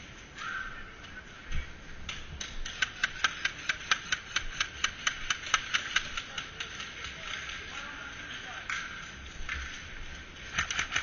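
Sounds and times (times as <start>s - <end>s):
airsoft gun shots: 10.5s - 11.0s.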